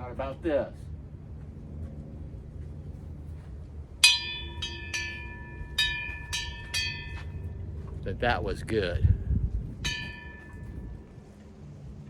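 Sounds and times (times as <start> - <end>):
metal bell ringing: 4.0 - 7.5, 9.8 - 10.9.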